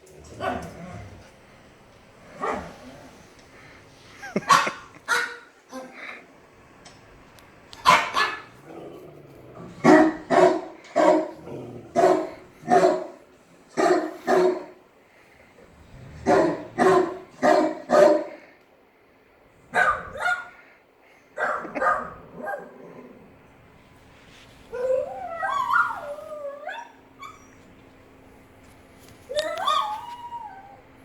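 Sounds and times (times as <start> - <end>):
dog barking loudly: 4.4 - 5.5, 7.8 - 8.6, 9.8 - 13.2, 13.8 - 14.8, 16.2 - 18.4, 19.7 - 20.6, 21.4 - 22.7.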